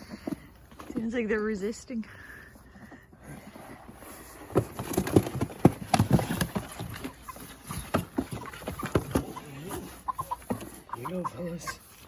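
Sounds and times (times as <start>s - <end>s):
chicken calls: 4.0s - 12.0s.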